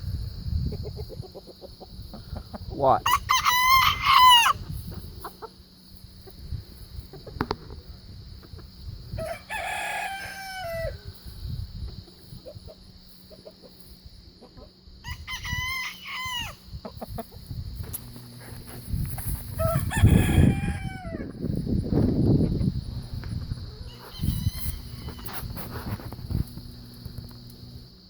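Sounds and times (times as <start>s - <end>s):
rooster crowing: 3.0s - 4.6s, 9.1s - 11.1s, 15.0s - 16.6s, 19.6s - 21.4s, 23.7s - 25.5s.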